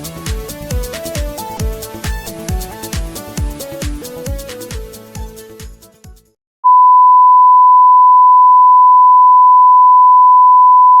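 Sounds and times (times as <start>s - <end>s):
electronic music with a beat: 0.0s - 6.3s.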